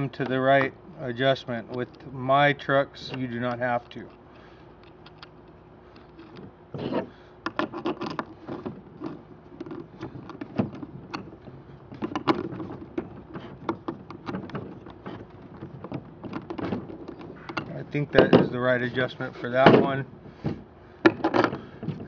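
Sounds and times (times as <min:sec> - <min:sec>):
skateboard wheel clicks and rattles: 0:04.8 - 0:17.8.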